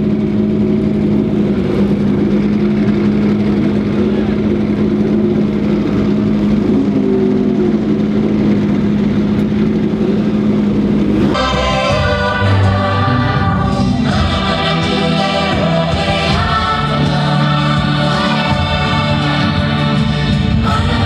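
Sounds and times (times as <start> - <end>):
music with sustained tones and bass: 10.8 - 21.0.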